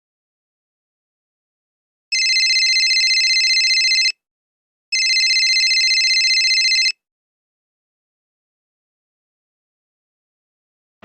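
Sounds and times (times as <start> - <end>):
telephone ringing: 2.1 - 4.2, 5.0 - 7.0.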